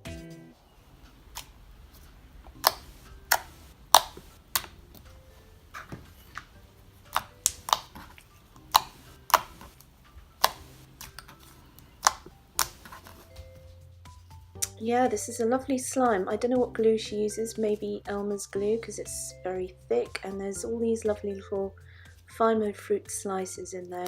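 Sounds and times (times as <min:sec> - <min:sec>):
slime popping and clicking: 0:01.1 - 0:13.2.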